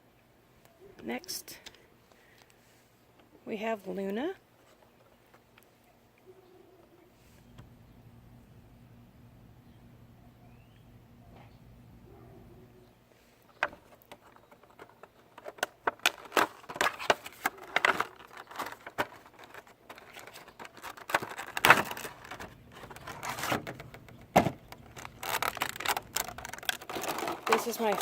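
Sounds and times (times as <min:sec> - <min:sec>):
packaging crinkling and clicking: 0:13.5 - 0:28.0.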